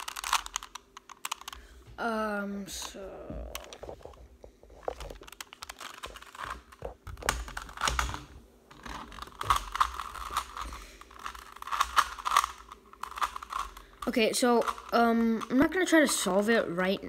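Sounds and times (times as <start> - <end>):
puzzle cube plastic clicks: 0.0 - 1.7, 4.8 - 16.4.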